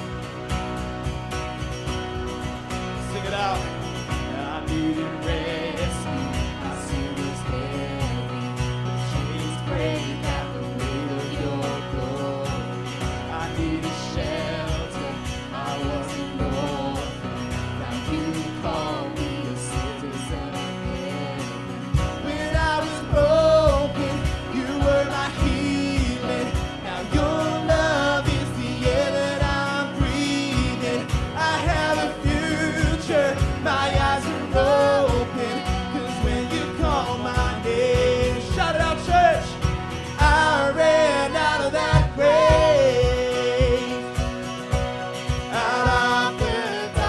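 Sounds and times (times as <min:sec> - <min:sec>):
steady drum beat: 0:00.0 - 0:40.9, 0:41.8 - 0:47.0
guitar: 0:00.0 - 0:47.0
person singing melody: 0:02.3 - 0:47.0.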